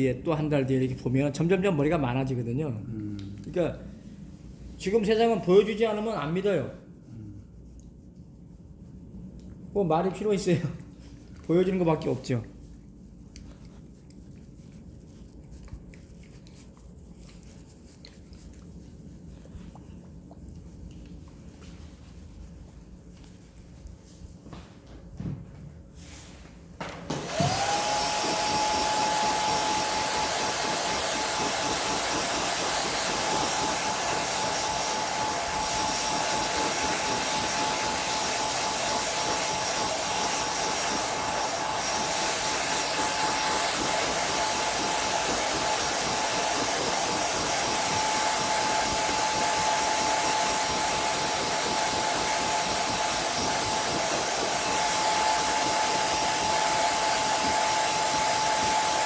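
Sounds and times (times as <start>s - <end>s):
hair dryer motor whine: 26.8s - 59.0s.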